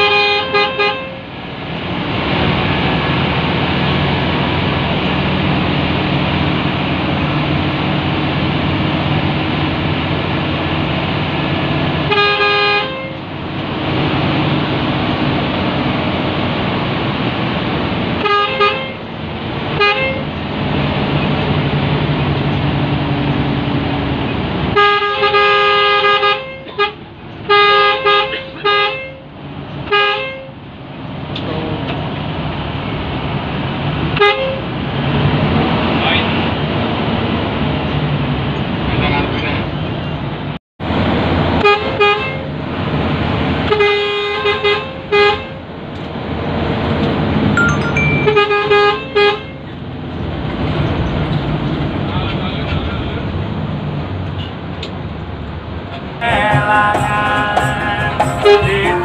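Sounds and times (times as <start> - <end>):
two-note bus horn: 0.0 - 1.3, 12.1 - 13.2, 18.2 - 19.0, 19.8 - 20.3, 24.7 - 29.2, 29.9 - 30.6, 47.6 - 49.6, 56.2 - 59.0
bus engine drone: 0.0 - 59.0.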